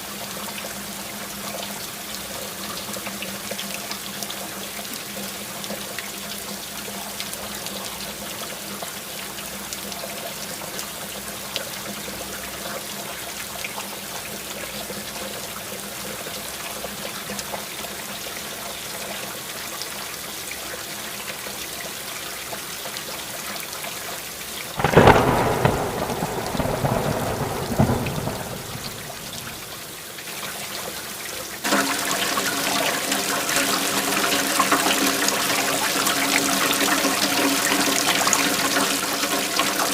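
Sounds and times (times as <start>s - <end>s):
steady rainfall: 0.0s - 39.9s
thunderclap rumbling: 24.8s - 29.8s.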